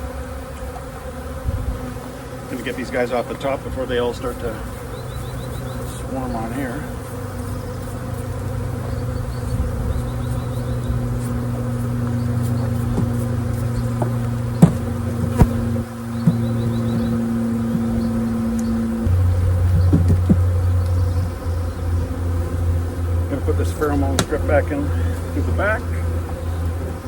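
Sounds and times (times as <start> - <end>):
bees buzzing: 0.0 - 27.0
deep steady hum: 3.6 - 27.0
sharp knocks: 12.0 - 18.1, 19.0 - 21.4.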